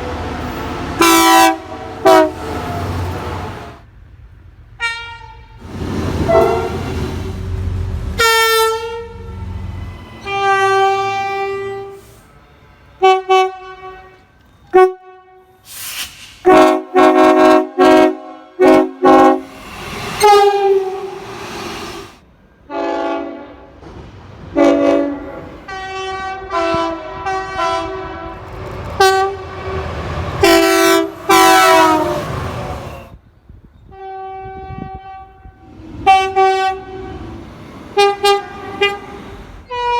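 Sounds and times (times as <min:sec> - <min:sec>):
locomotive air horn blasts: 0:01.0 - 0:03.7, 0:04.8 - 0:05.6, 0:06.2 - 0:07.0, 0:08.2 - 0:09.4, 0:10.2 - 0:12.3, 0:13.0 - 0:22.1, 0:22.7 - 0:23.7, 0:24.6 - 0:28.4, 0:29.0 - 0:33.1, 0:33.9 - 0:37.4, 0:38.0 - 0:39.9.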